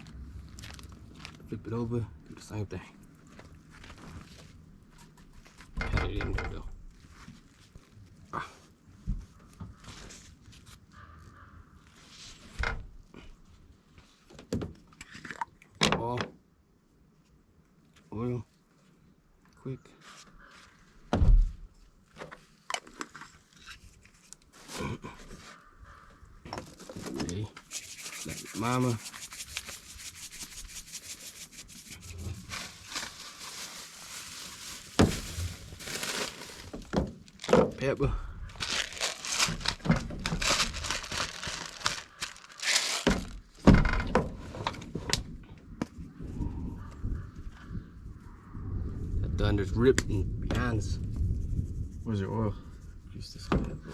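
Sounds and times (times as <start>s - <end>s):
hands rubbing and scraping fish: 27.5s - 36.8s, 38.6s - 43.3s
soft rustling: 27.6s - 37.5s, 38.6s - 43.4s.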